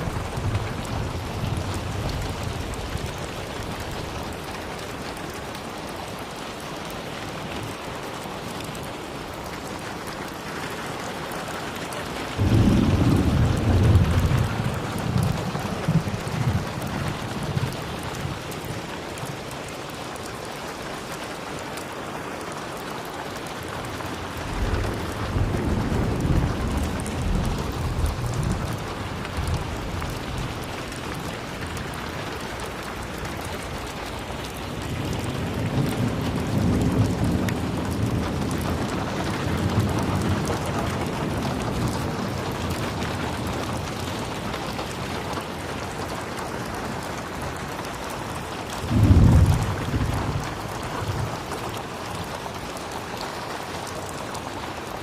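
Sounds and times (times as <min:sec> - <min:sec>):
rolling thunder rumbles: 0:00.0 - 0:05.3, 0:12.0 - 0:19.0, 0:24.1 - 0:52.9
steady rain falling: 0:00.0 - 0:55.0.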